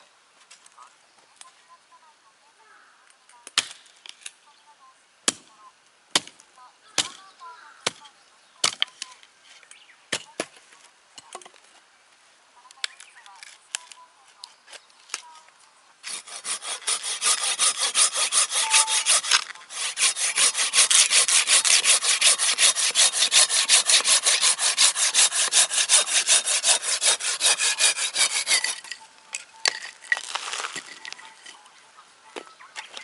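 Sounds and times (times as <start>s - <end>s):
hand saw cutting wood: 16.0s - 29.0s.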